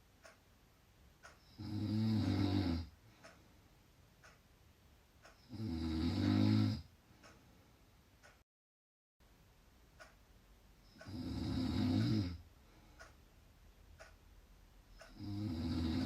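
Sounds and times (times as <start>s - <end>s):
faint ticks: 0.1s - 0.5s, 1.2s - 3.6s, 4.2s - 4.4s, 5.2s - 6.5s, 7.2s - 7.5s, 8.2s - 8.4s, 10.0s - 13.3s, 13.9s - 14.3s, 14.9s - 16.0s
loud snoring: 1.5s - 2.9s, 5.4s - 6.9s, 11.0s - 12.4s, 15.1s - 16.0s.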